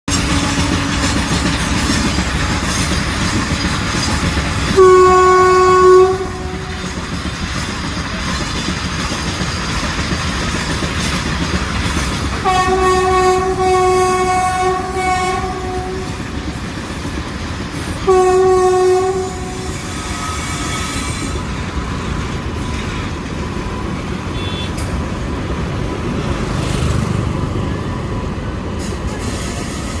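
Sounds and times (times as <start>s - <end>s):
train horn blasts: 0.1s - 3.0s, 4.0s - 7.1s, 12.4s - 16.5s, 17.9s - 21.6s, 24.2s - 24.9s
train running noise: 0.1s - 30.0s.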